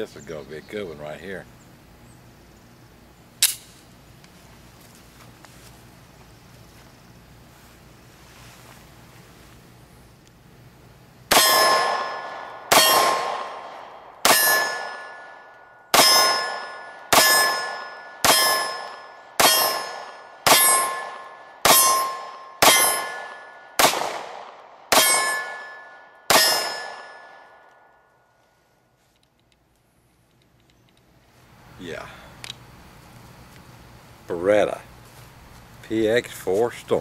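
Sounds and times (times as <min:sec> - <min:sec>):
steel plate ringing: 0:11.3 - 0:13.2, 0:14.3 - 0:23.6, 0:24.9 - 0:27.4
pistol shots: 0:11.3 - 0:27.6.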